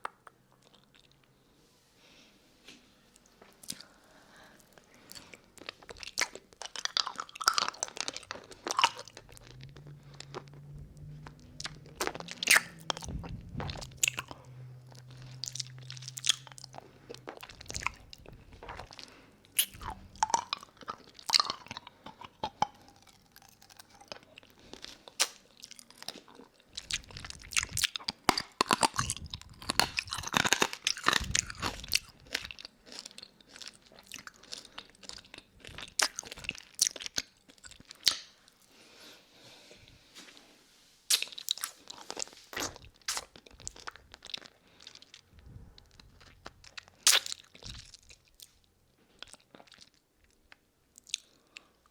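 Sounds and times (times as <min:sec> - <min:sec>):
low steady hum: 0:00.2 - 0:36.6
mouth crunching hard candy: 0:04.6 - 0:38.4, 0:41.1 - 0:48.6.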